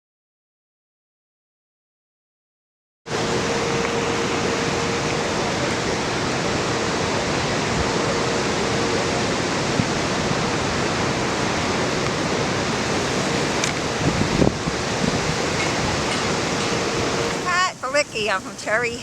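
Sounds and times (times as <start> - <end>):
storm wind rushing: 3.1 - 18.2
faint steady hum: 3.1 - 19.0
heavy surf: 3.1 - 19.0.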